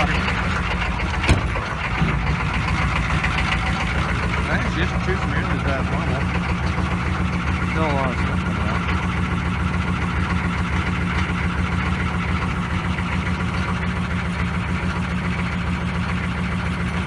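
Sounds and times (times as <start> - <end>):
diesel engine idling: 0.0 - 17.0.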